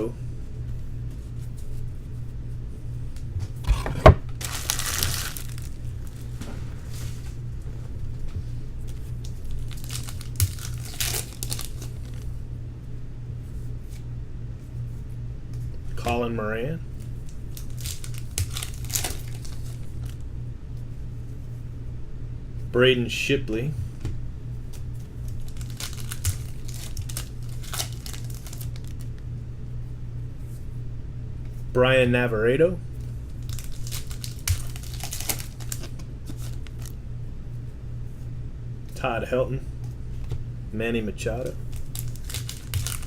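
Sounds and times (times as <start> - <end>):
low hum: 0.0 - 43.0
wrappers crinkling and tearing: 4.3 - 7.3, 8.8 - 12.3, 16.9 - 20.2, 24.7 - 29.1, 33.0 - 37.0, 41.6 - 43.0
trading cards rustling and clicking: 4.4 - 7.2, 8.8 - 12.3, 17.0 - 20.2, 25.2 - 29.1, 33.0 - 37.0, 41.7 - 43.0.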